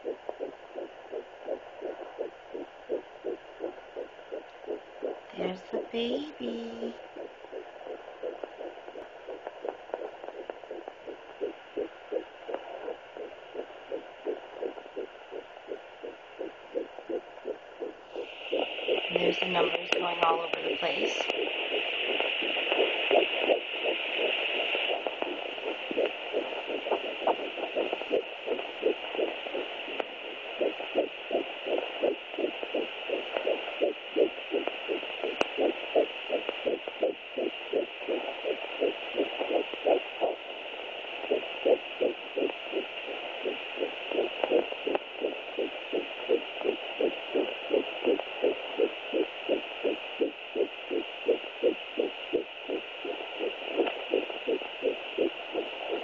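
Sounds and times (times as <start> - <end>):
fetal heartbeat pulses: 0.0 - 56.0
steady hiss: 0.0 - 56.0.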